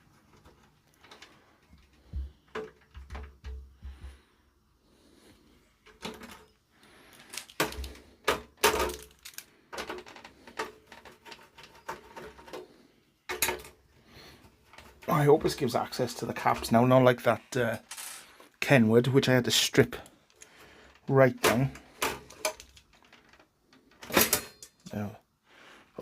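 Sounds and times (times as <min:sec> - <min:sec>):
metal parts clicking and clattering: 0:05.8 - 0:12.6, 0:17.8 - 0:18.4, 0:21.5 - 0:24.9.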